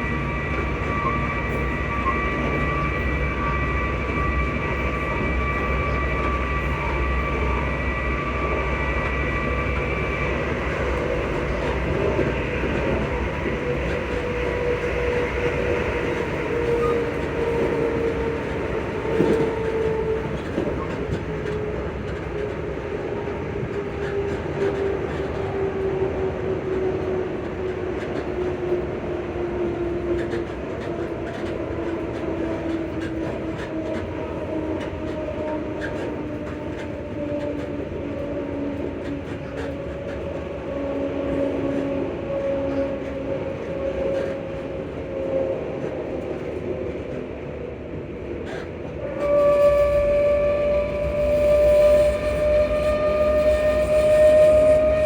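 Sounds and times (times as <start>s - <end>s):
rail rumble: 0.0s - 55.0s
train motor whine: 49.0s - 55.0s.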